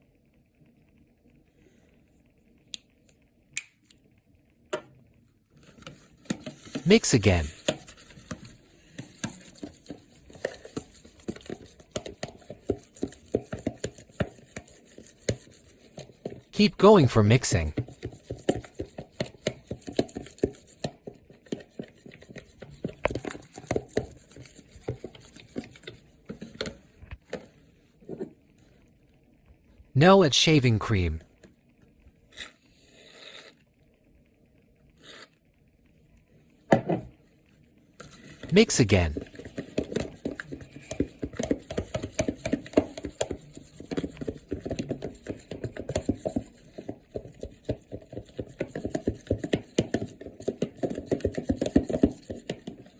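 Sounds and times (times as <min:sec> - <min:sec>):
slime being stirred: 0:05.6 - 0:16.6, 0:17.6 - 0:27.5, 0:38.0 - 0:52.9.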